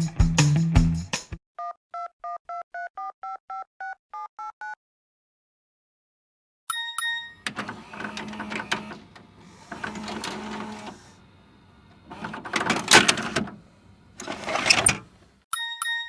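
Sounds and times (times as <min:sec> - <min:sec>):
tape mechanism motor whirring: 0:07.5 - 0:15.2.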